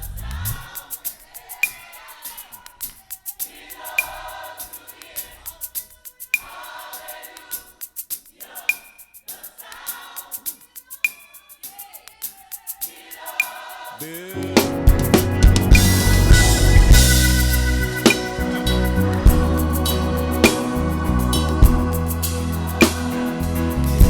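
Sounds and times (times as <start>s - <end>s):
gospel choir singing: 0.0s - 10.8s, 11.6s - 24.0s
steady sharp beat: 13.4s - 24.0s.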